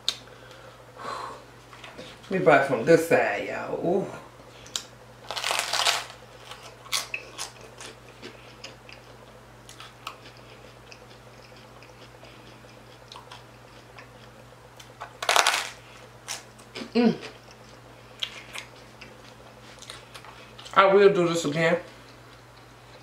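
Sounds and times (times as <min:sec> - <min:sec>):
crunching bite and chewing: 0:04.6 - 0:20.8.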